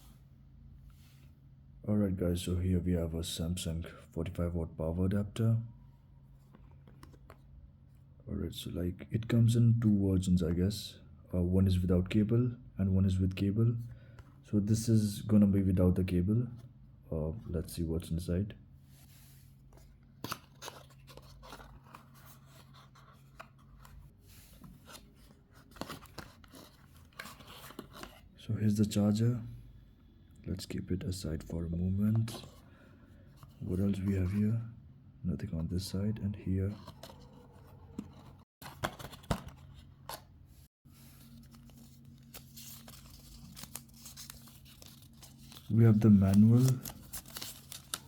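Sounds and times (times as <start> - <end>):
paper packaging rustling: 19.6 - 28.3, 36.7 - 40.3, 40.9 - 48.0.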